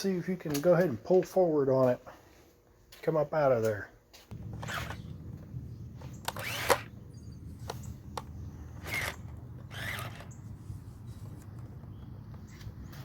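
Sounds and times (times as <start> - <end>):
steady low hum: 3.8 - 13.0
small electric motors whirring: 4.3 - 5.0, 6.0 - 7.0, 7.6 - 11.5
sharp clicks: 6.0 - 7.0.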